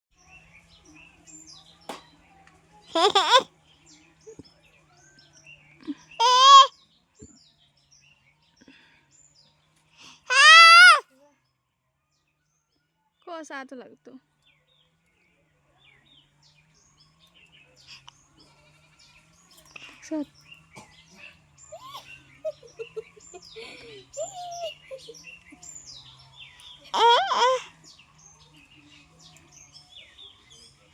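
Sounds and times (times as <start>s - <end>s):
loud clear bird calls: 2.9s - 9.4s, 10.0s - 11.0s, 15.8s - 30.8s
loud pitched bird call: 6.2s - 6.7s, 10.3s - 11.0s
birds chirping and whistling: 20.4s - 30.8s.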